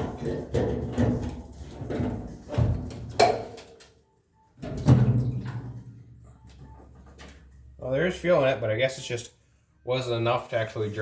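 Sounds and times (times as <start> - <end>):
metal fuel tank clanking and booming: 0.0 - 3.6, 4.6 - 6.1.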